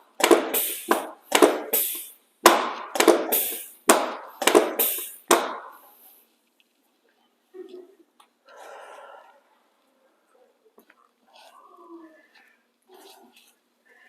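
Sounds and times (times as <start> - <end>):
sharp ringing knocks: 0.2 - 5.8.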